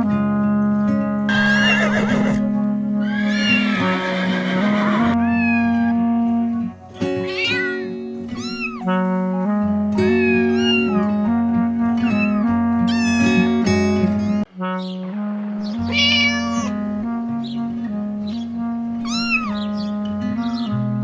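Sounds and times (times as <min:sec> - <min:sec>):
background music with held notes: 0:00.0 - 0:21.0
cat meowing: 0:03.0 - 0:04.0, 0:05.1 - 0:06.1, 0:07.0 - 0:09.0, 0:10.0 - 0:11.2, 0:12.0 - 0:14.4, 0:15.7 - 0:16.8, 0:19.0 - 0:19.8.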